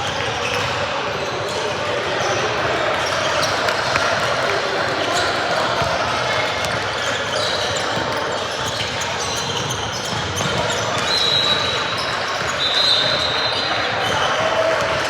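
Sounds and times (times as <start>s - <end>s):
sneakers squeaking on floor: 0.0s - 4.3s, 5.1s - 15.0s
crowd and player chatter: 0.0s - 15.0s
basketball bouncing on court: 5.8s - 13.3s.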